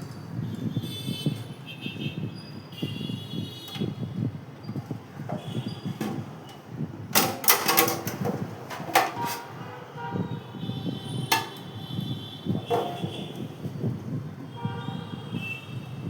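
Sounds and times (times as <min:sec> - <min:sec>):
faint squeaks: 0:02.4 - 0:06.8
hard parts clacking and rattling: 0:03.7 - 0:09.7, 0:11.2 - 0:11.9, 0:12.5 - 0:13.8.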